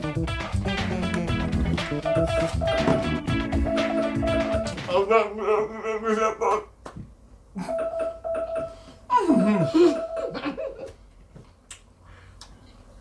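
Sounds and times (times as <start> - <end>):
timer alarm chiming short tones: 2.0 - 4.8
person laughing loudly: 7.6 - 10.9.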